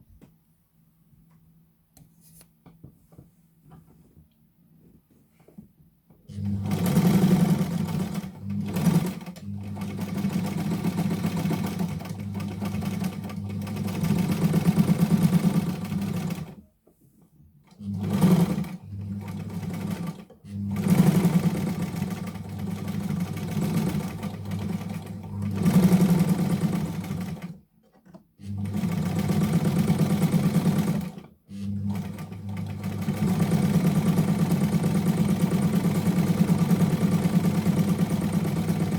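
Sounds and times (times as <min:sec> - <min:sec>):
sewing machine stitching: 0:06.3 - 0:16.6, 0:17.6 - 0:38.9.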